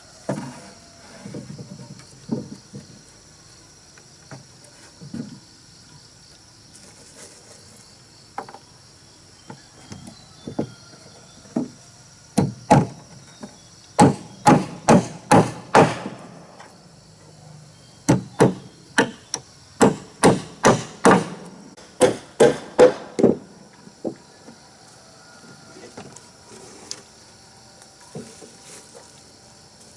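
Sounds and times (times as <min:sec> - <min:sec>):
hammering on wood: 0:12.4 - 0:13.0, 0:14.0 - 0:16.3, 0:18.1 - 0:24.2.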